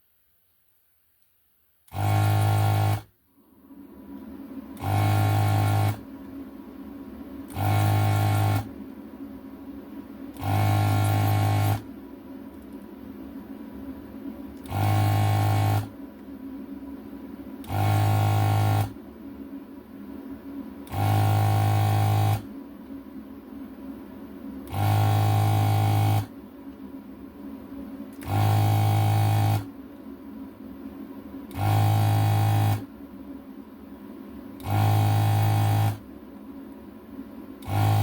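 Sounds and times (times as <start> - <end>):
rework station hum: 0.0 - 38.0
desoldering vacuum pump buzzing: 1.9 - 3.1, 4.6 - 6.1, 7.4 - 8.8, 10.1 - 12.0, 14.3 - 16.0, 17.4 - 19.0, 20.8 - 22.6, 24.6 - 26.4, 28.1 - 29.8, 31.4 - 33.0, 34.5 - 36.1, 37.5 - 38.0.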